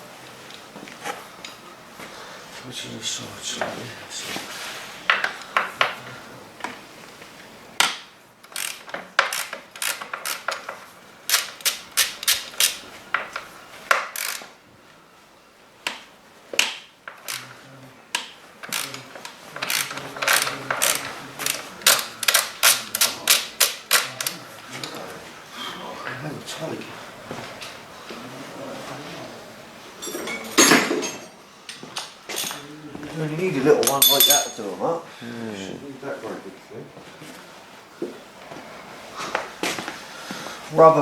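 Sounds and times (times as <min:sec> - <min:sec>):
hand tools clicking on metal: 0:07.8 - 0:14.5, 0:16.6 - 0:17.6, 0:18.2 - 0:25.0, 0:33.8 - 0:34.6.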